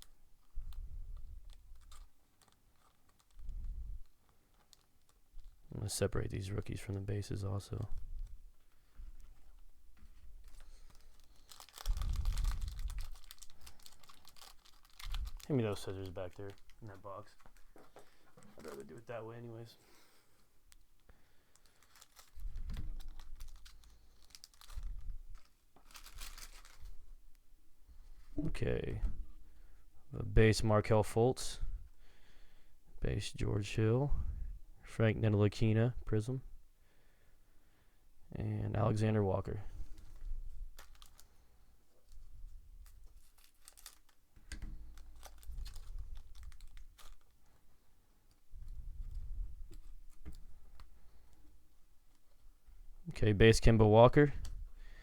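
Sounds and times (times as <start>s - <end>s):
foil crinkling and tearing: 1.5s - 5.2s, 10.4s - 17.7s, 21.5s - 27.0s, 40.0s - 41.4s, 42.8s - 47.4s.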